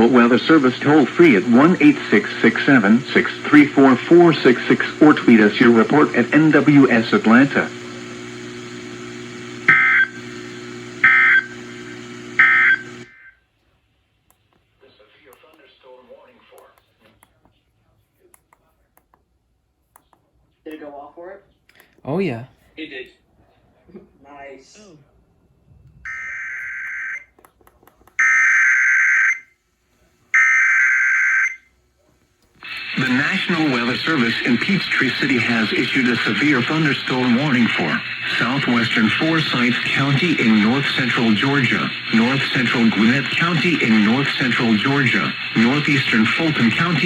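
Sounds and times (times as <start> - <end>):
buzzy digital data tones: 0.0 - 13.1
steady low hum: 0.0 - 13.1, 32.5 - 47.0.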